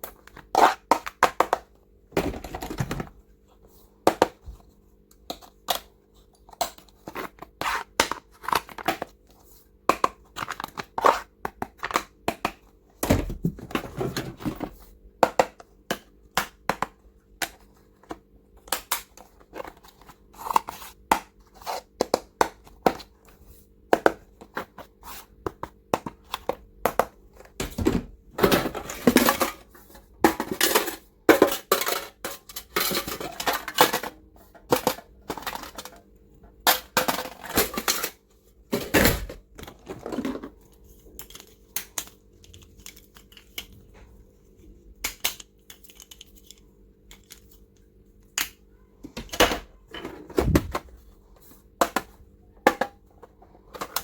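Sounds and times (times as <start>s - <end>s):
clicks and taps of plastic items: 0.0s - 3.2s, 4.0s - 29.5s.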